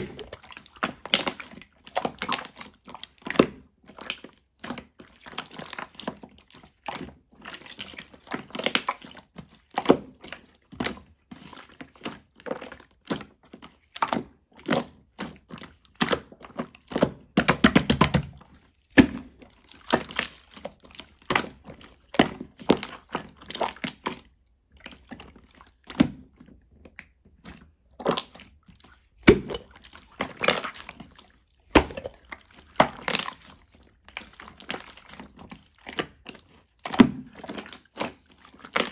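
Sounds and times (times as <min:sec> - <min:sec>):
slime squelching and clicking: 0:14.0 - 0:38.9.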